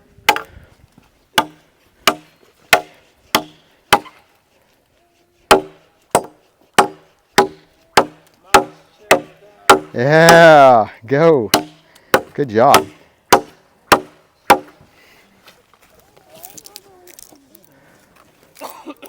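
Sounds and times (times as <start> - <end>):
machete chopping wooden log: 0.3 - 0.5, 1.4 - 4.2, 5.5 - 10.6, 11.5 - 14.8.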